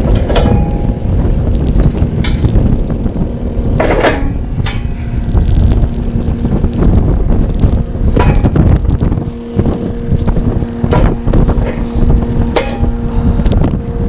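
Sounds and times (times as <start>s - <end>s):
metal clanks and knocks: 0.0s - 1.1s, 2.2s - 2.6s, 3.8s - 5.4s, 8.1s - 8.7s, 12.5s - 13.6s
diesel engine rumbling: 0.0s - 14.0s.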